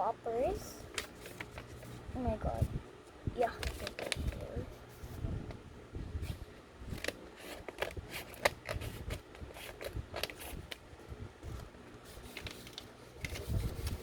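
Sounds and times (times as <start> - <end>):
plastic packaging crinkling: 3.4 - 4.5.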